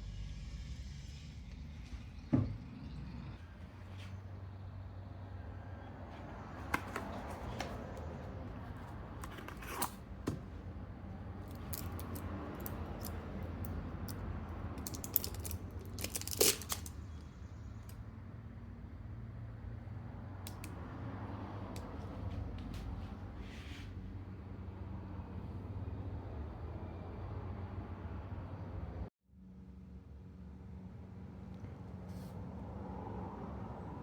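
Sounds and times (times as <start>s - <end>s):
clicks and knocks of objects handled: 6.6s - 10.4s, 11.4s - 14.2s, 14.8s - 17.0s.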